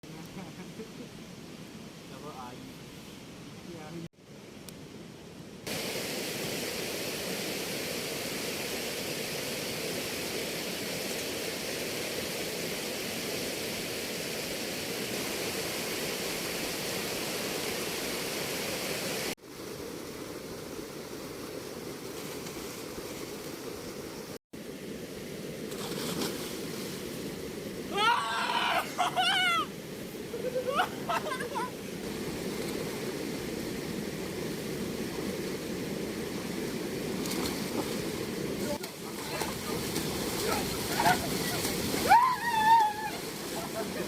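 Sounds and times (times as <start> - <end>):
river water rushing: 5.7 - 19.4, 24.6 - 44.0.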